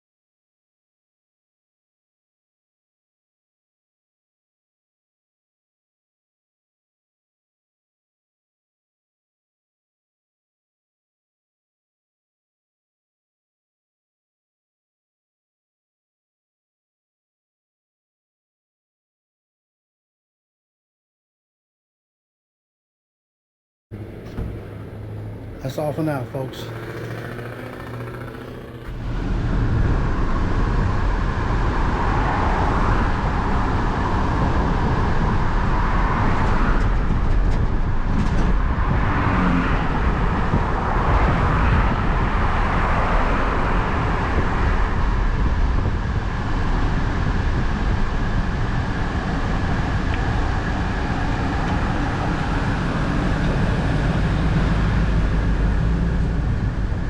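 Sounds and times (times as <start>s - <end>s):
vehicle engine and road rumble: 23.9s - 57.0s.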